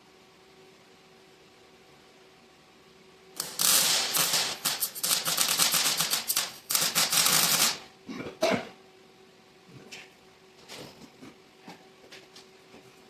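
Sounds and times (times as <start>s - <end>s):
welder crackling: 3.4s - 7.9s.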